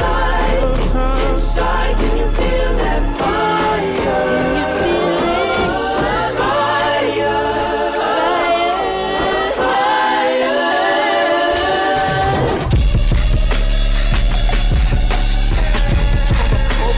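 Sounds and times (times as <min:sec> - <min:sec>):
choir-like vocals singing: 0:00.0 - 0:16.9
heavy bass beat: 0:12.1 - 0:16.9.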